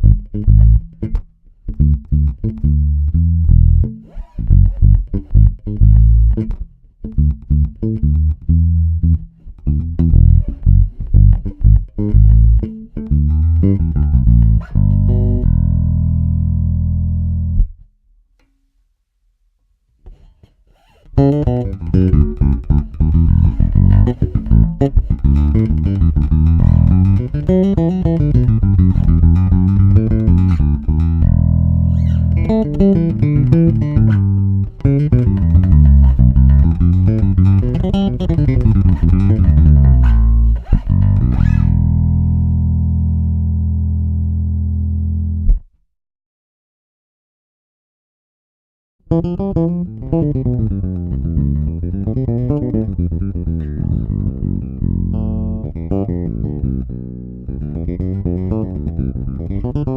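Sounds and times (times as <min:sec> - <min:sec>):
electric bass guitar notes: 0:00.0 - 0:17.9, 0:21.0 - 0:45.7, 0:49.1 - 0:59.9.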